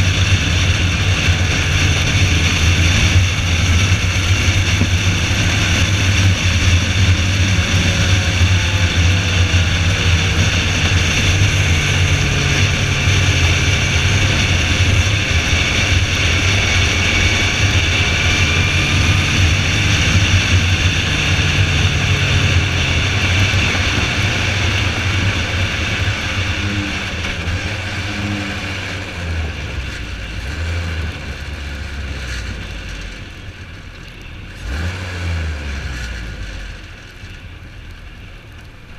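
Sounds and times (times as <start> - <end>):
car engine pulling: 0.0 - 38.9
wind and road noise: 0.0 - 38.9.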